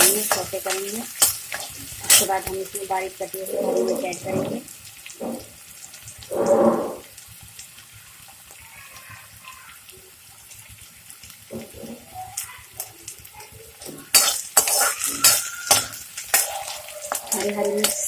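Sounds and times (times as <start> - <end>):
spoon scraping a pan: 0.0 - 2.6, 3.3 - 4.6, 6.2 - 7.1, 11.5 - 18.0
onion frying in hot oil: 0.0 - 18.0.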